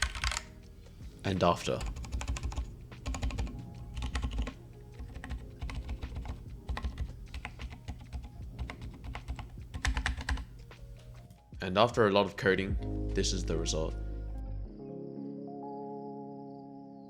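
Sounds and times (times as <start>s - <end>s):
keyboard keys clicking: 0.0s - 0.7s, 1.4s - 11.4s.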